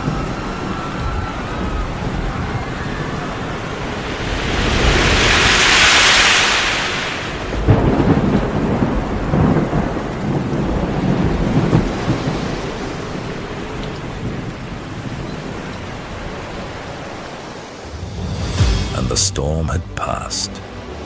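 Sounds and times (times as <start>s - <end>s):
thunder rumbling: 0.0s - 14.6s
rain: 0.0s - 21.0s
rushing hiss: 3.1s - 8.4s.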